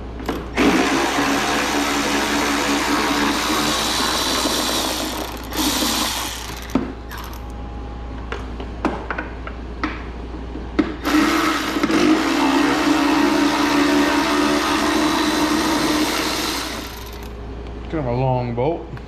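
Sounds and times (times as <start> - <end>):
power tool running: 0.5 - 7.5, 11.0 - 17.4.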